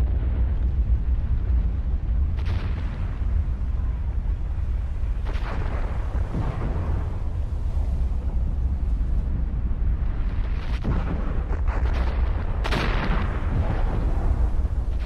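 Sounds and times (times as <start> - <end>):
deep volcanic rumble: 0.0 - 15.0
explosive blasts: 5.1 - 9.1, 9.9 - 15.0.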